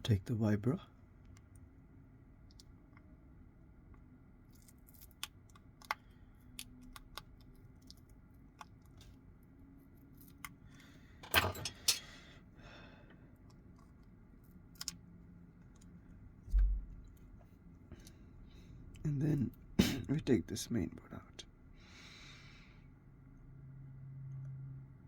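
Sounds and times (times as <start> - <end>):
clatter of small hard parts: 11.2 - 12.0.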